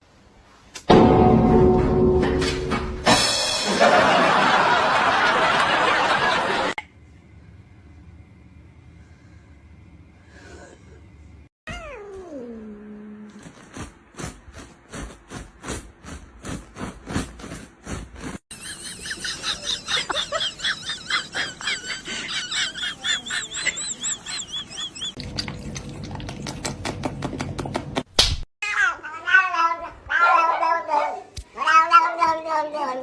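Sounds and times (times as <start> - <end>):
cat meowing: 28.6 - 33.0.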